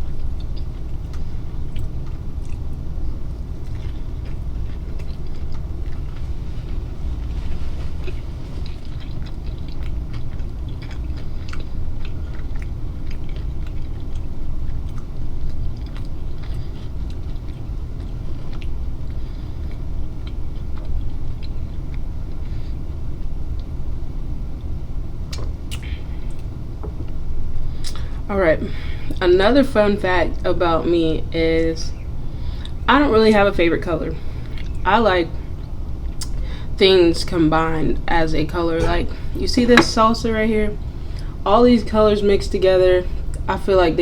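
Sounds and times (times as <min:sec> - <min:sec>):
chewing and mouth sounds: 0:00.0 - 0:23.8, 0:25.3 - 0:28.1, 0:34.3 - 0:34.9, 0:35.5 - 0:36.6
low hum: 0:00.0 - 0:44.0.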